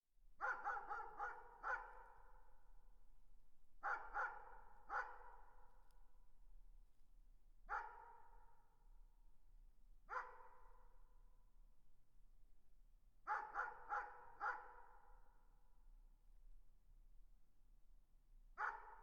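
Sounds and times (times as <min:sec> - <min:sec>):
distant dog barking with echo: 0:00.4 - 0:02.4, 0:03.8 - 0:05.6, 0:07.7 - 0:08.6, 0:10.1 - 0:10.9, 0:13.3 - 0:15.2, 0:18.6 - 0:19.0.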